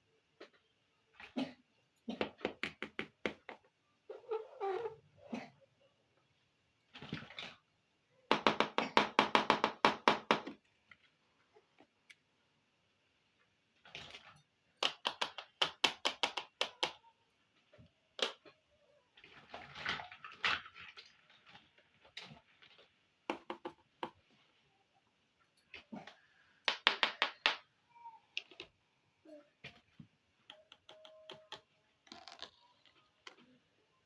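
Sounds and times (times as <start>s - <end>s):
plastic toys scraping: 19.2s - 23.0s, 32.0s - 33.6s.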